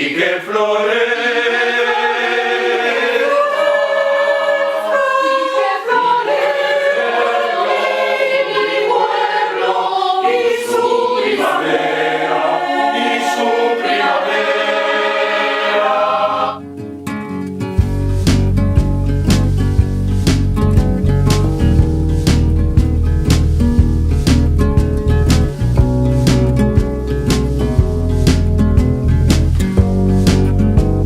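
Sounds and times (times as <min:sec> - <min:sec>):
choir singing in harmony: 0:00.0 - 0:16.6.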